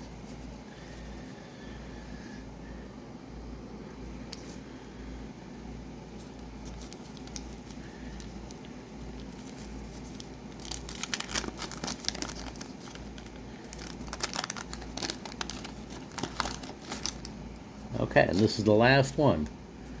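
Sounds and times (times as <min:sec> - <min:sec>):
wrapper crackling: 0:06.6 - 0:17.6.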